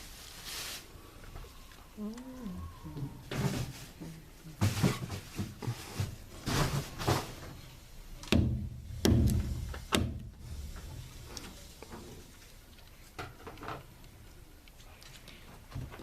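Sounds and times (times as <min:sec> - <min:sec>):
scraping or rustling: 0:00.0 - 0:01.0, 0:03.2 - 0:07.7
knocks and thuds: 0:08.3 - 0:10.3.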